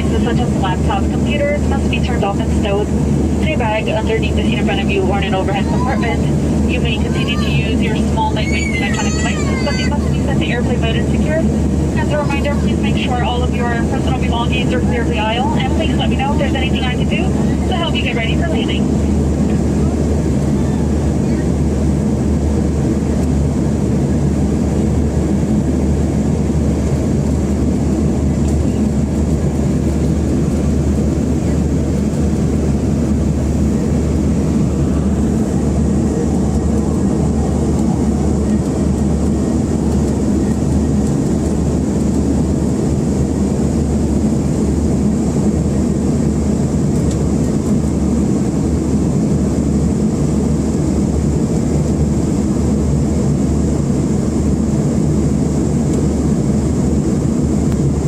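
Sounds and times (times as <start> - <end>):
airliner engine rumble: 0.0 - 58.0
rushing air: 28.8 - 39.9.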